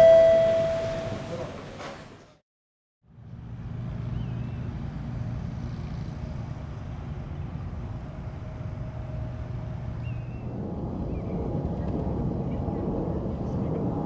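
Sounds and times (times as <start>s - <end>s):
short high chirp: 0.0s - 1.8s
faint steady tone: 0.0s - 2.3s
distant jet engine rumble: 6.8s - 14.0s.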